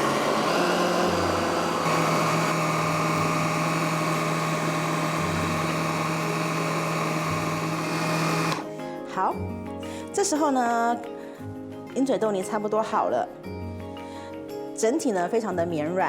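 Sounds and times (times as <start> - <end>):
electric blender running: 0.0 - 8.7.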